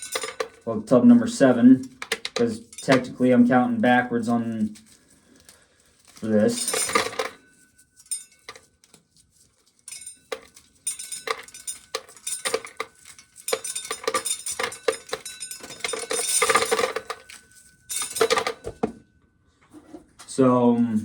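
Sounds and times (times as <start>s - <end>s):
corn kernels clattering in metal pail: 0.0s - 7.4s, 9.9s - 18.8s.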